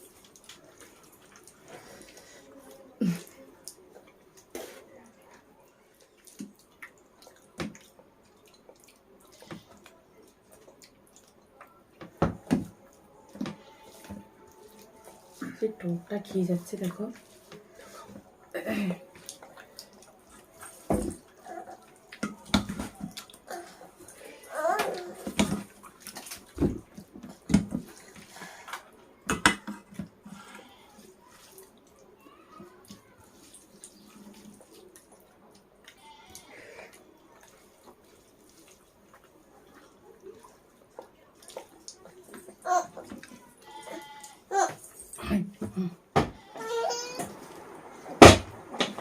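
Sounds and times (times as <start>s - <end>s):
chewing and slurping: 0.0s - 11.6s, 17.1s - 28.9s, 32.8s - 45.0s
wet eating sounds: 0.0s - 48.1s.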